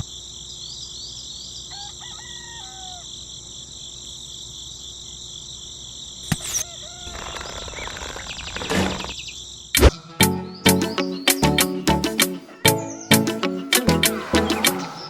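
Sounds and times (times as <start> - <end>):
crickets chirring: 0.0 - 9.8.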